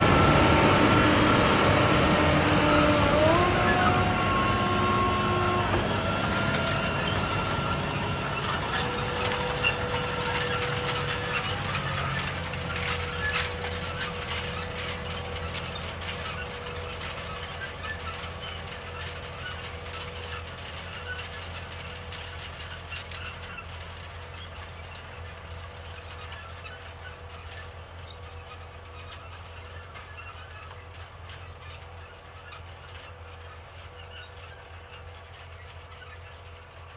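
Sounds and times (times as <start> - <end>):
tractor engine running: 0.0 - 36.9.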